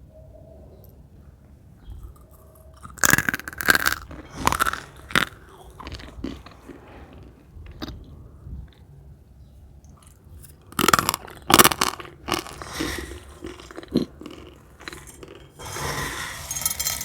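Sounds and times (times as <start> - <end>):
crunchy chewing: 2.0 - 8.8, 10.0 - 15.9.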